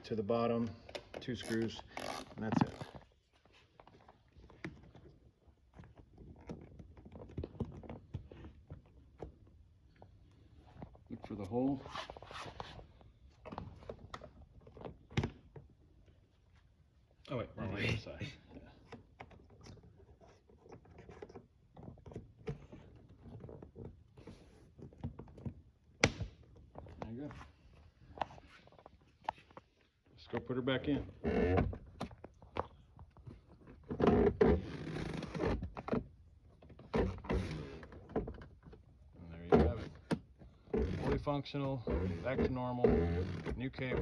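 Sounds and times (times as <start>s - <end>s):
faint scratching and rubbing: 10.3s - 13.2s, 40.8s - 44.0s.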